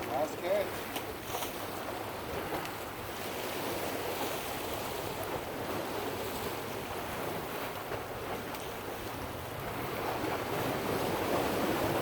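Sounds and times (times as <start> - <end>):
ocean surf washing on shore: 0.0 - 12.0.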